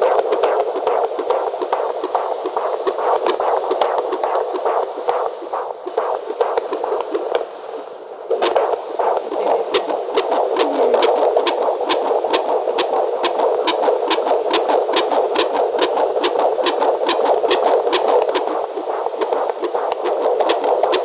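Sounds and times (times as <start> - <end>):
fetal heartbeat on doppler speaker: 0.0 - 21.0.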